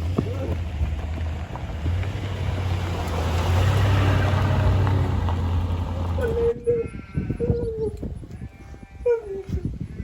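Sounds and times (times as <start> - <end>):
car engine running: 0.0 - 6.3
road noise: 0.0 - 7.3
wind buffeting microphone: 0.0 - 10.0.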